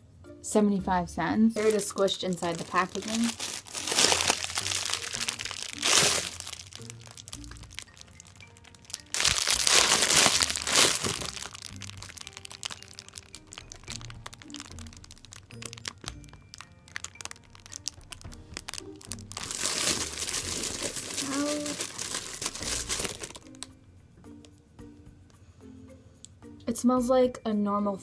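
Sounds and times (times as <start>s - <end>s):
quiet background music: 0.0s - 28.0s
plastic packaging crinkling: 1.6s - 23.7s.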